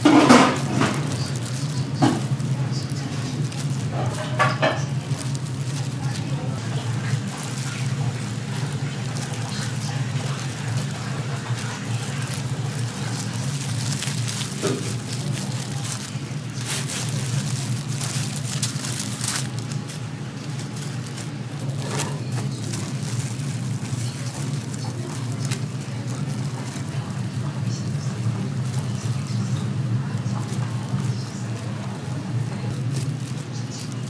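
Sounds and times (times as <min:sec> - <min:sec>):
sharp clicks and clatters: 0:00.0 - 0:06.2
steady low hum: 0:00.0 - 0:34.0.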